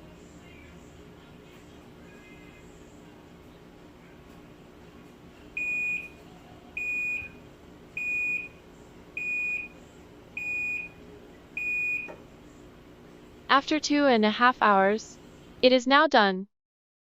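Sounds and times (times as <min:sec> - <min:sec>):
washing machine buzzer beeps: 0:05.6 - 0:06.2, 0:06.8 - 0:08.6, 0:09.2 - 0:09.8, 0:10.4 - 0:11.0, 0:11.6 - 0:12.2.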